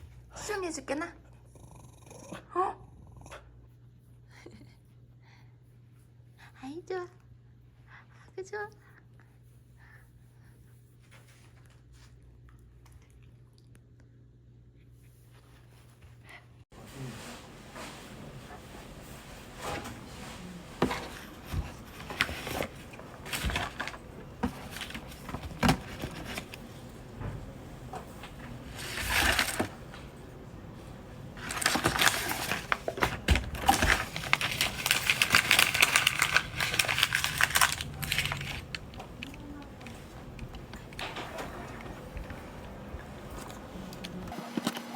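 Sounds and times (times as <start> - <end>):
clicks and knocks of objects: 19.6 - 30.2, 31.4 - 44.9
packaging crinkling: 20.8 - 27.2, 28.0 - 41.2.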